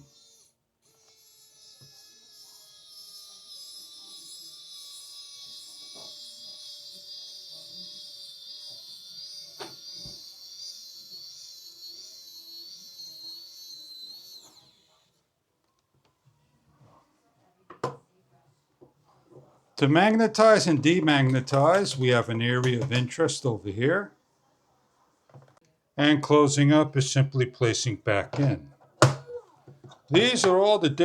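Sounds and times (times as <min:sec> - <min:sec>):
electric screwdriver motor whine: 0:00.0 - 0:15.2.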